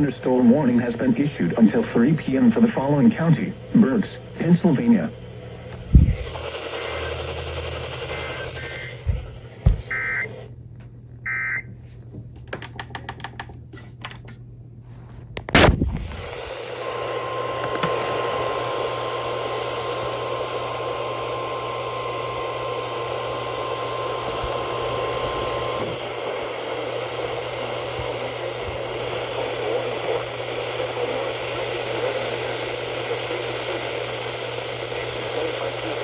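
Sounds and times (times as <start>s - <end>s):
radio static: 0.0s - 10.5s, 15.5s - 36.0s
steady warning alarm tone: 9.8s - 10.3s, 16.6s - 28.2s
sharp pop: 15.5s - 16.0s.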